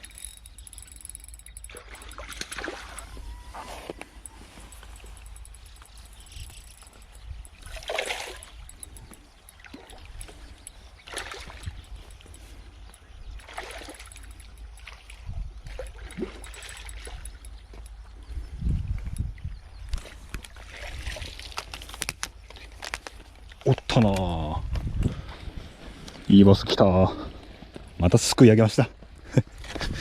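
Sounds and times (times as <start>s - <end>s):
fish splashing in water: 1.7s - 4.0s, 6.9s - 8.8s, 9.5s - 11.9s.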